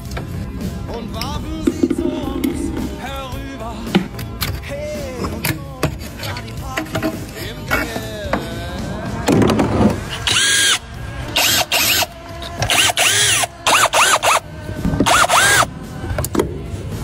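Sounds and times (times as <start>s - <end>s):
power drill whining: 10.1s - 10.8s, 11.4s - 14.4s, 15.0s - 15.7s.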